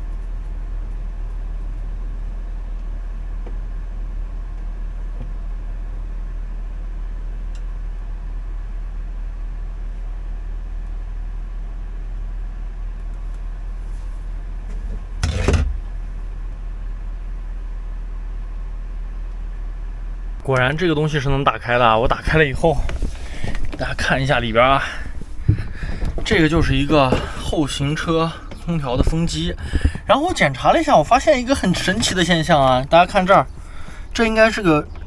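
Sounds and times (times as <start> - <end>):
steady low rumble: 0.0 - 35.0
plastic panel scraping clatter: 14.7 - 15.8, 22.8 - 24.1, 25.0 - 27.6.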